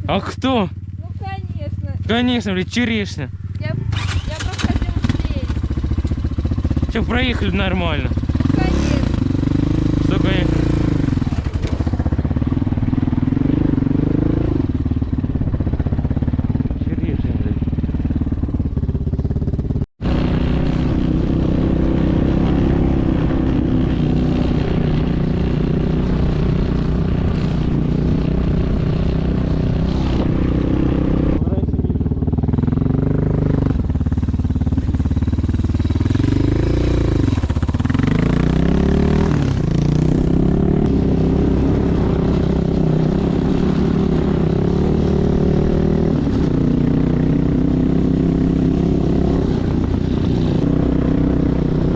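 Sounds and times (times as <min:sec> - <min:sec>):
vehicle engine revving while driving: 0:06.6 - 0:15.0, 0:20.0 - 0:51.9.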